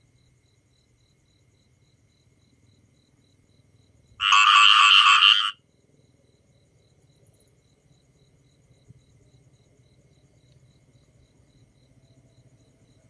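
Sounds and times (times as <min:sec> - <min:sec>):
frog pulsed call: 0:04.2 - 0:05.6.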